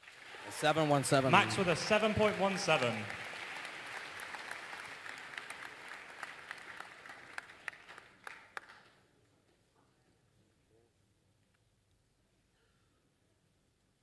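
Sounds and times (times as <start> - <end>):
audience applauding: 0.0 - 9.0.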